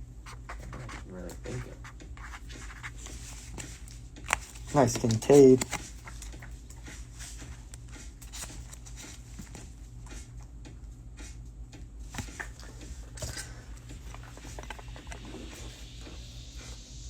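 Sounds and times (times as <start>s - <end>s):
steady low hum: 0.0s - 17.0s
cards clicking and sliding: 0.3s - 10.3s, 12.1s - 15.8s.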